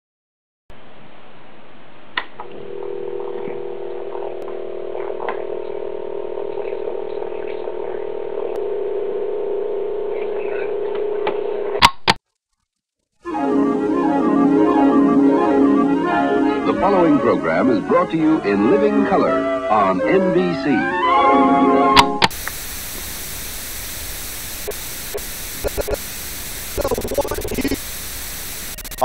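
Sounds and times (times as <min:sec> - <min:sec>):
tape hiss: 0:00.8 - 0:11.7, 0:13.2 - 0:29.0
sustained chord hum: 0:13.2 - 0:22.2.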